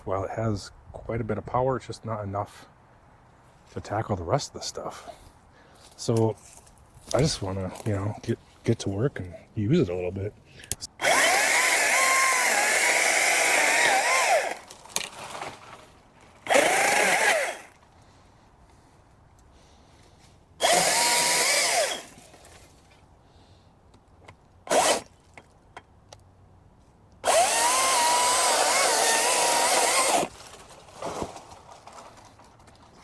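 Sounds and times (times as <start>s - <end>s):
electric chainsaw whine: 11.0s - 14.7s, 16.4s - 17.8s, 20.6s - 22.4s, 24.7s - 25.1s, 27.2s - 30.3s.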